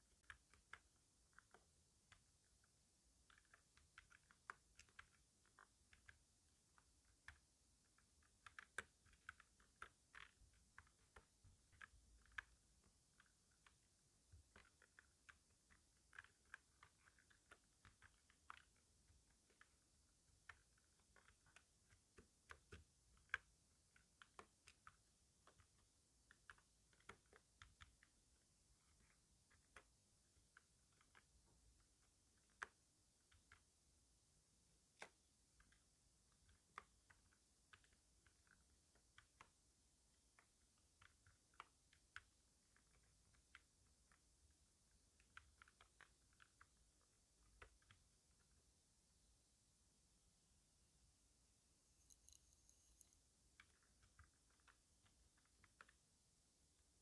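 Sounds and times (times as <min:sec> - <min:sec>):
keyboard typing clicks: 0:51.9 - 0:56.0.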